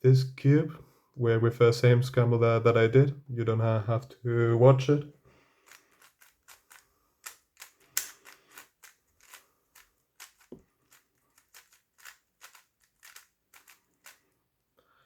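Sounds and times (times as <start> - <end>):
plastic puzzle cube clicking: 5.6 - 14.2.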